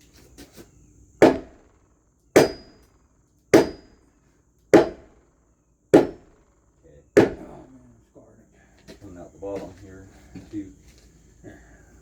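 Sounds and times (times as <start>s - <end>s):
sledgehammer striking wooden post: 1.2s - 1.7s, 2.4s - 4.0s, 4.7s - 5.2s, 5.9s - 6.5s, 7.2s - 7.6s.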